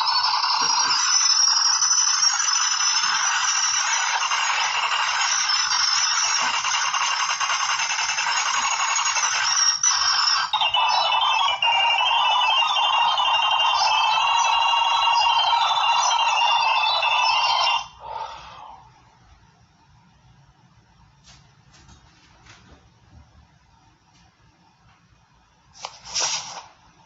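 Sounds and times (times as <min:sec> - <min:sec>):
steady high tones: 0:00.0 - 0:19.0.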